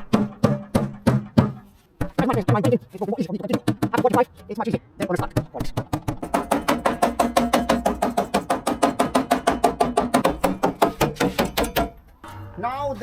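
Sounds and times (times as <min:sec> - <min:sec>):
hammering on metal sheet: 0:05.4 - 0:12.0.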